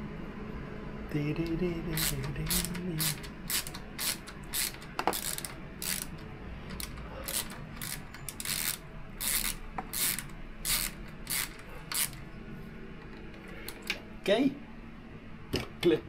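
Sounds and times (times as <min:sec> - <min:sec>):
hand ratchet clicking: 0:01.9 - 0:12.2.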